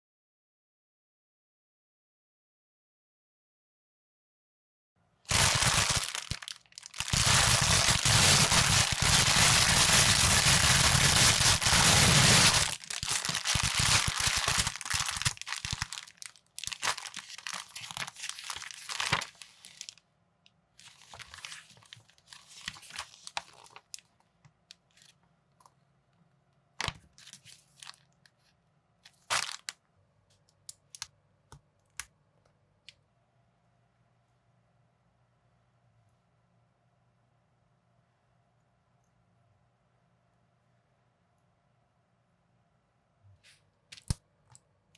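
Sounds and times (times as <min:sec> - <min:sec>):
plastic packaging tearing and crinkling: 0:05.3 - 0:20.0, 0:20.8 - 0:24.1, 0:29.1 - 0:29.8.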